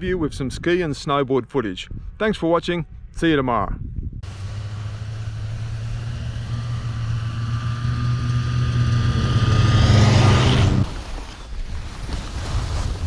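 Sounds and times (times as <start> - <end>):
motor humming: 4.2 - 11.0
thin high whine: 4.3 - 11.4.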